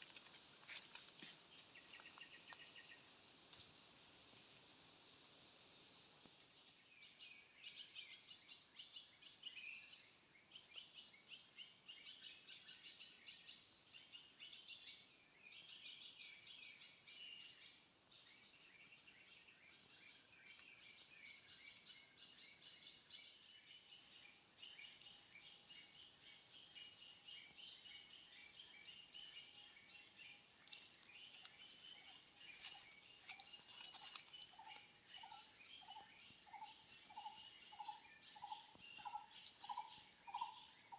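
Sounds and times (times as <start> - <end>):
birds chirping: 24.0 - 40.9.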